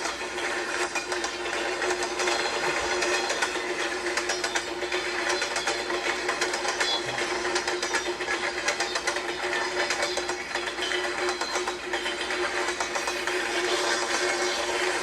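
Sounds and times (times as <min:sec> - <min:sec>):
train wheels clicking over joints: 0:00.0 - 0:15.0
steady hum: 0:12.9 - 0:15.0.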